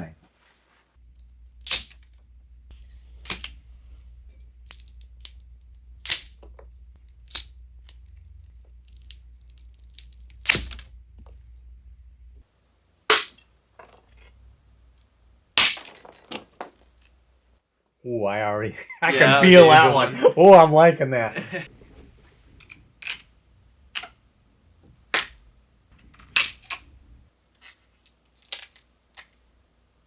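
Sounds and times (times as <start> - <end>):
sharp cracks and snaps: 1.1 - 2.3, 3.2 - 3.7, 4.3 - 11.7, 13.1 - 17.2, 22.6 - 29.6.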